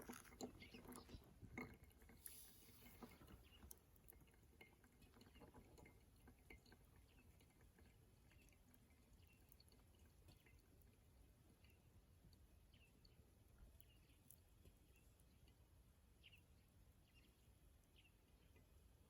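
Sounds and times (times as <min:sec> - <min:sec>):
soft hiss: 0:02.1 - 0:04.0.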